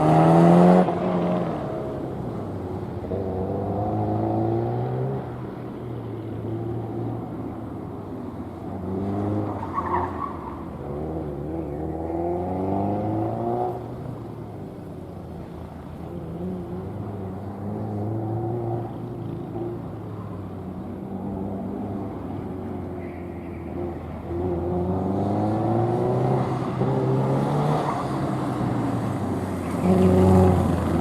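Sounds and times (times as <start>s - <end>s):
tire squeal: 9.4s - 10.9s.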